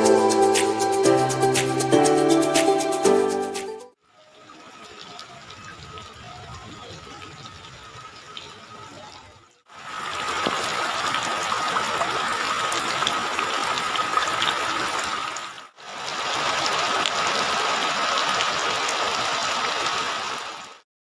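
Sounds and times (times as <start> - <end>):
heavy rain pouring: 4.1 - 20.8.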